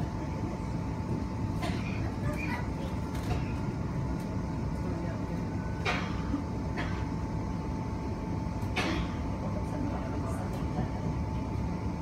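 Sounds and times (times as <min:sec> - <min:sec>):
train rumble with thin whine: 0:00.0 - 0:12.0.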